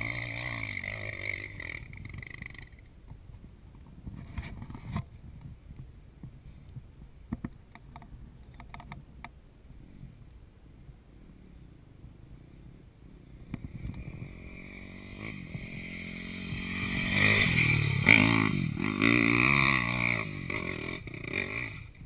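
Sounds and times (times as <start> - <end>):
motorcycle engine passing: 0.0 - 2.9, 12.6 - 22.0.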